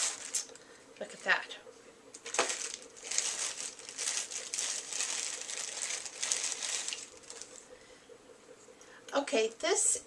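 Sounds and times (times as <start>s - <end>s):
plastic packaging crinkling: 0.0s - 1.4s, 2.1s - 7.7s.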